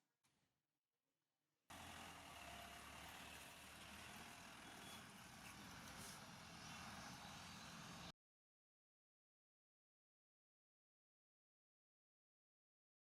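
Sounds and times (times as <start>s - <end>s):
vehicle noise: 1.7s - 8.1s.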